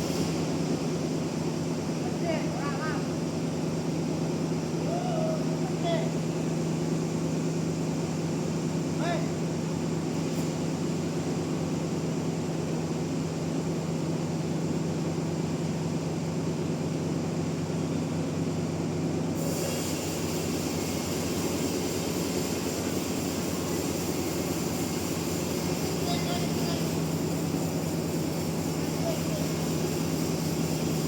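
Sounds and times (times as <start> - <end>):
sawmill machinery humming: 0.0 - 31.0
high hiss: 19.4 - 31.0.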